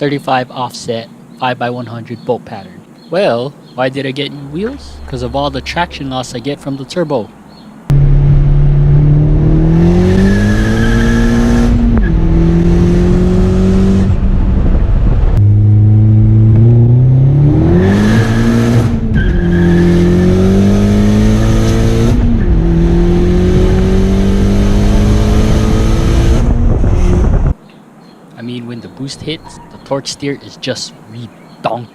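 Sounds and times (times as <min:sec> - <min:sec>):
car engine accelerating hard: 0:07.9 - 0:27.6.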